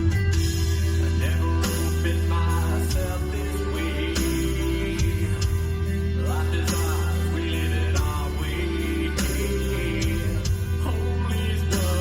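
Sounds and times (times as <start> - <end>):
bass-heavy music from car stereo: 0.0 - 12.0.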